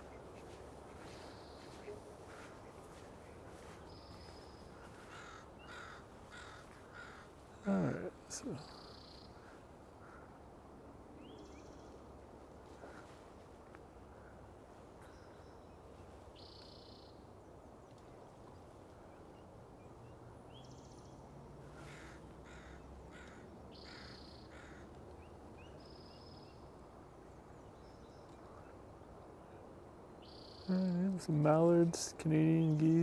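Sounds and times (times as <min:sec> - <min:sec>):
harsh rasping bird calls: 0:00.0 - 0:10.3, 0:21.8 - 0:24.9
low background hum: 0:00.0 - 0:16.6, 0:24.3 - 0:33.0.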